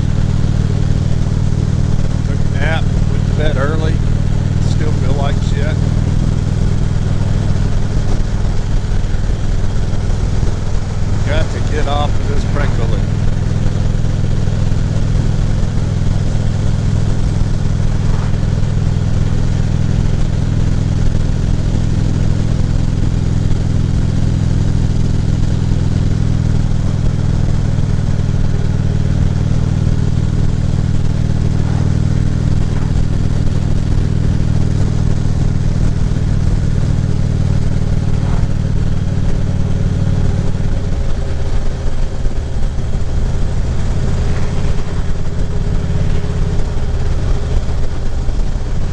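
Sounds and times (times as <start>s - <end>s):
motorcycle engine running: 0.0s - 48.9s
wind and road noise: 0.0s - 48.9s.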